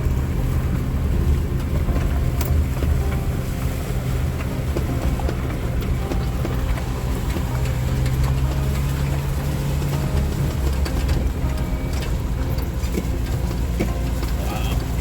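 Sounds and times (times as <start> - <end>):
car engine from inside cabin: 0.0 - 15.0
light rattles and knocks: 0.0 - 15.0.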